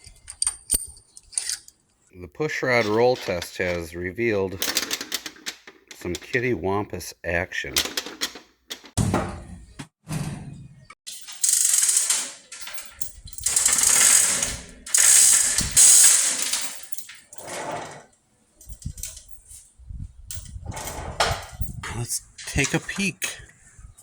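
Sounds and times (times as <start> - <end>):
metallic clicks and knocks: 7.8 - 9.0
rattling mechanical noise: 11.1 - 19.5.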